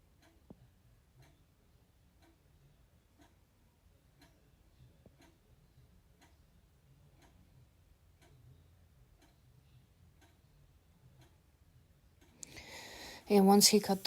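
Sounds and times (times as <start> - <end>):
faint regular tick: 0.2 - 0.6, 1.2 - 1.4, 2.2 - 2.4, 3.2 - 3.4, 4.2 - 4.4, 5.0 - 5.4, 7.2 - 7.4, 8.2 - 8.4, 9.2 - 9.4, 10.2 - 10.4, 11.2 - 11.4, 12.2 - 12.7.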